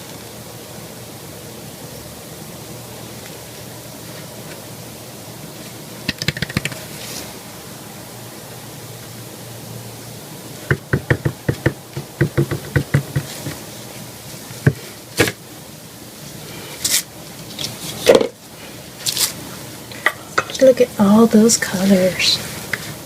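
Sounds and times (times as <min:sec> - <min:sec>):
objects knocking on work surface: 0:10.7 - 0:13.6.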